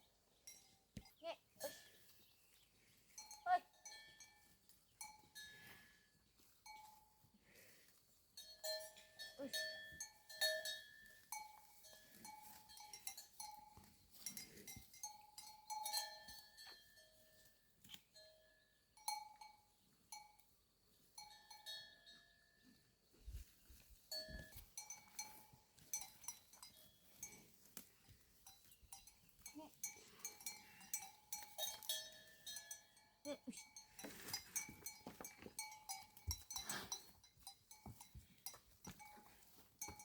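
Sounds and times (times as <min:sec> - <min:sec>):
small metal bells clanking: 0:00.3 - 0:22.7, 0:24.1 - 0:40.0.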